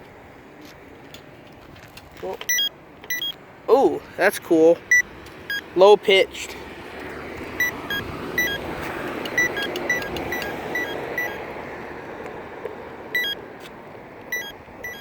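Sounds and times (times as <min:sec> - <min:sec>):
traffic passing: 0:00.0 - 0:15.0
crosswalk button beeping: 0:02.4 - 0:03.4, 0:04.9 - 0:05.7, 0:07.6 - 0:11.5, 0:13.2 - 0:13.4, 0:14.3 - 0:15.0.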